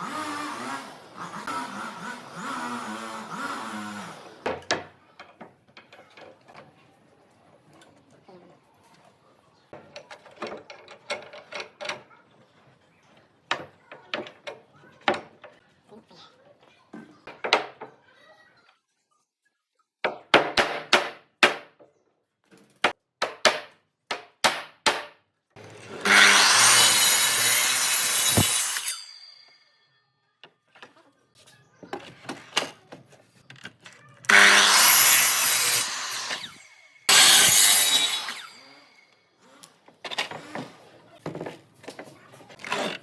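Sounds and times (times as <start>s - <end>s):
saw cutting through wood: 0.0s - 4.6s, 25.6s - 29.7s, 34.3s - 39.2s.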